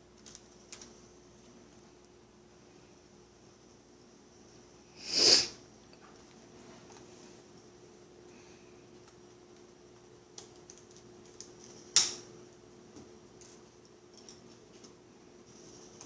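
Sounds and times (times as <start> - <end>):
laptop parts clicking and tapping: 10.3 - 12.2.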